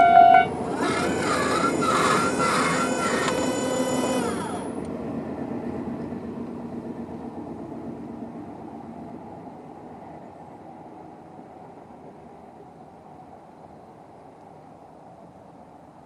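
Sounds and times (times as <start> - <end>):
barrier motor whirring: 0.0 - 4.9
train rumble: 0.0 - 16.0.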